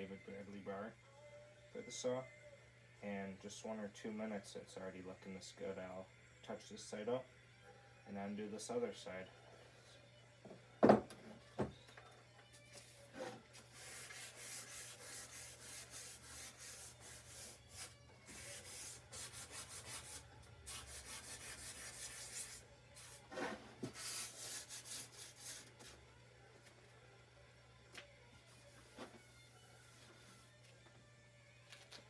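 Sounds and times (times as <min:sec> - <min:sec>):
sandpaper scratching on steel: 0:13.2 - 0:25.7.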